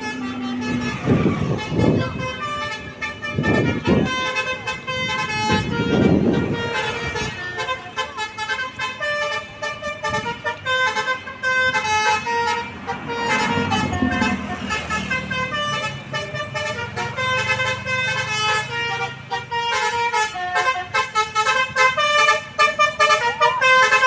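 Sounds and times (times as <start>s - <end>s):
multi-tone melodic bus horn: 0.0s - 24.0s.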